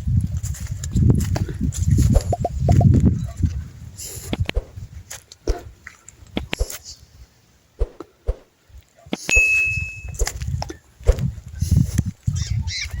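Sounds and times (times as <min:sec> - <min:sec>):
metallic strike ringing: 0:09.3 - 0:10.2.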